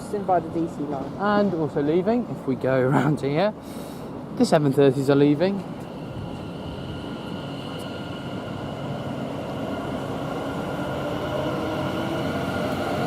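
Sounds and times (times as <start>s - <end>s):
train rumble: 0.0s - 13.0s
electric train traction whine: 5.0s - 13.0s.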